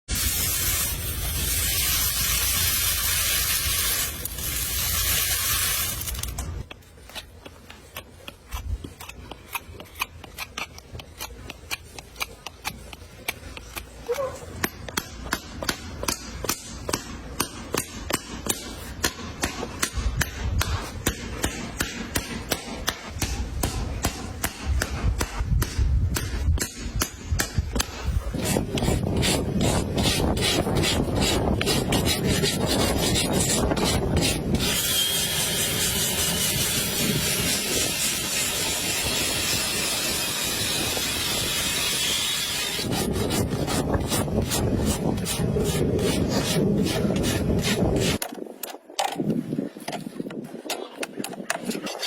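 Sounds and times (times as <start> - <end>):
loud even hiss: 0.1 - 6.4
hand rasp strokes: 27.8 - 48.2.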